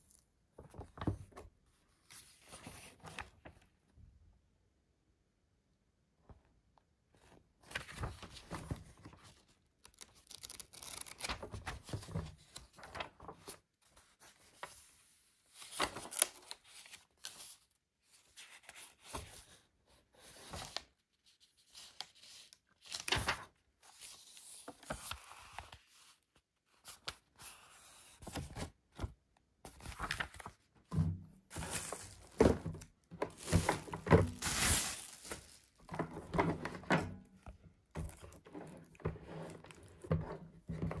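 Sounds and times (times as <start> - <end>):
plastic packaging rustling: 31.5 - 36.6.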